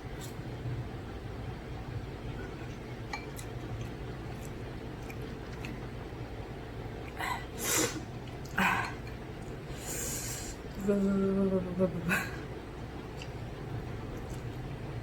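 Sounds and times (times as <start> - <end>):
low background hum: 0.0 - 15.0
quiet chewing: 2.4 - 6.1, 8.1 - 9.6, 12.4 - 14.7.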